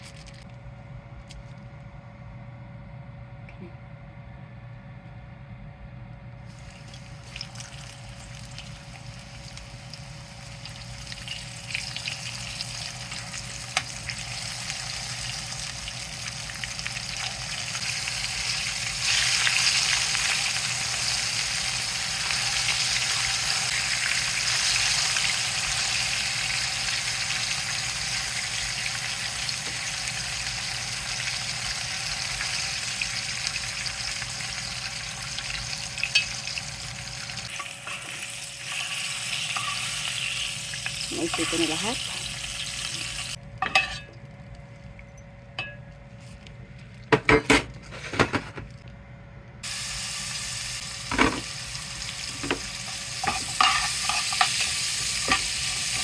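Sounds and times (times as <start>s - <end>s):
meat sizzling in a pan: 6.5s - 43.4s, 49.6s - 56.0s.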